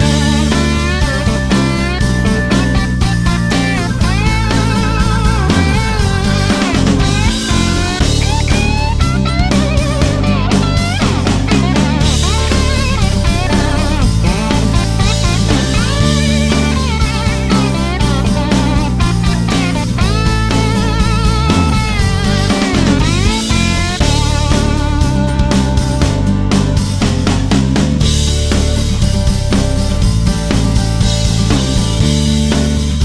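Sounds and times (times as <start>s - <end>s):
electric guitar with vibrato: 0.0s - 33.0s
rock music: 0.0s - 33.0s.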